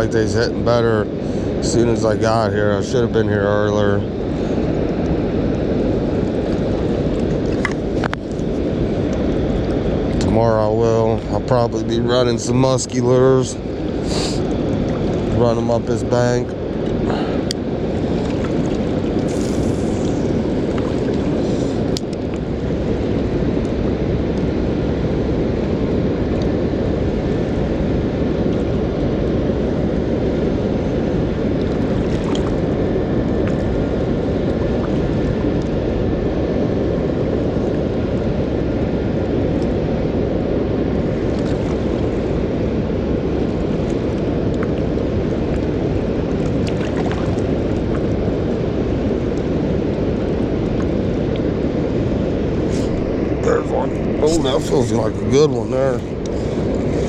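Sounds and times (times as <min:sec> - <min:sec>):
water roaring through dam spillway: 0:25.5 - 0:57.0.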